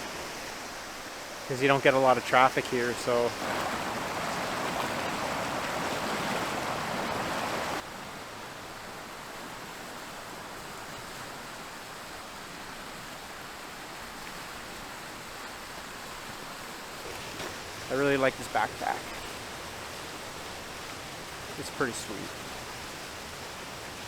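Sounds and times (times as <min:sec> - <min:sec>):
waterfall rushing: 0:00.0 - 0:07.8, 0:17.2 - 0:24.0.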